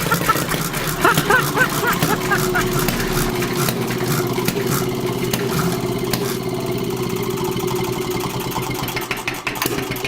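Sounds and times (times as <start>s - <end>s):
vehicle engine running: 0.0s - 10.0s.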